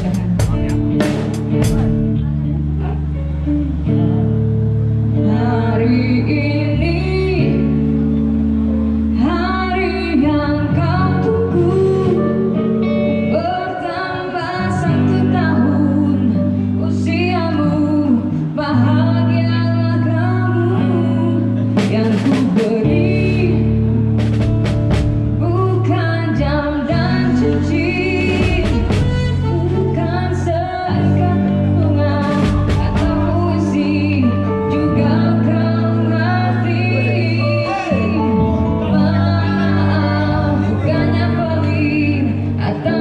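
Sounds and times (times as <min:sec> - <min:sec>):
person singing: 0:00.0 - 0:04.2, 0:25.4 - 0:43.0
bass notes: 0:00.0 - 0:13.6, 0:14.6 - 0:43.0
guitar: 0:00.0 - 0:43.0.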